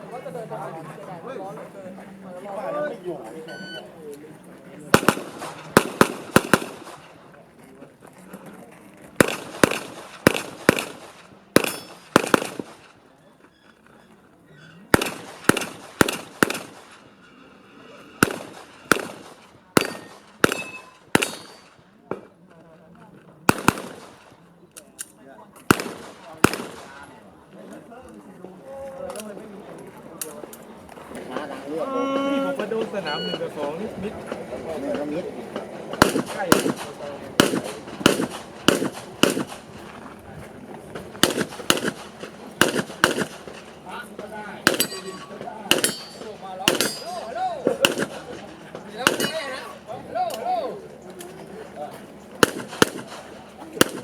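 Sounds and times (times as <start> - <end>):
handgun shots with echo: 5.0 - 7.0, 9.2 - 12.8, 15.0 - 16.9, 18.2 - 22.2, 23.5 - 24.2, 25.6 - 27.0, 36.0 - 39.7, 41.2 - 43.7, 44.6 - 48.4, 49.0 - 49.6, 52.4 - 54.0.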